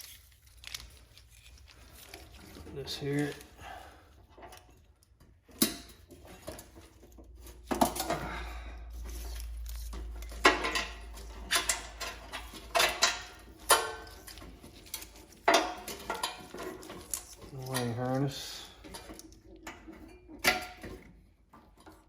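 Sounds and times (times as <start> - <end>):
metal scraping: 5.6 - 21.0
metallic clanks and clinks: 9.0 - 22.0.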